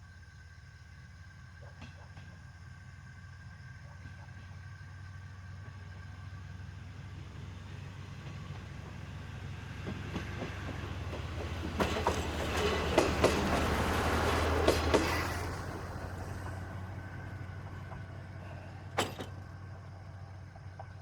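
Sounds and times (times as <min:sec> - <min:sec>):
diesel railcar engine drone: 0:00.0 - 0:21.0
train wheels clacking over rail joints: 0:08.2 - 0:19.5.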